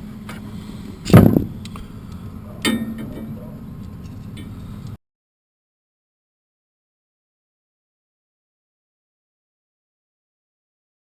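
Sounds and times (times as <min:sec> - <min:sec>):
low hum: 0:00.0 - 0:05.0
metal clanks: 0:02.6 - 0:03.5.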